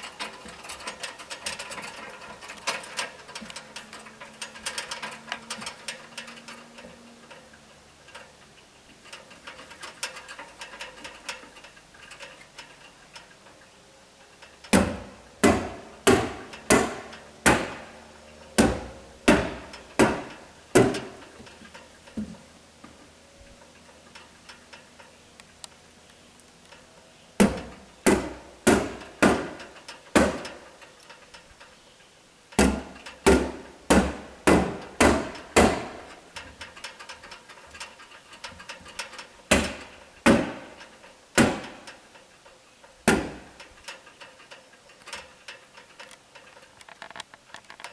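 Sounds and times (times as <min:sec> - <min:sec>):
hammer blows ringing: 0:14.8 - 0:21.3, 0:27.4 - 0:30.6, 0:32.6 - 0:36.1, 0:41.4 - 0:41.9.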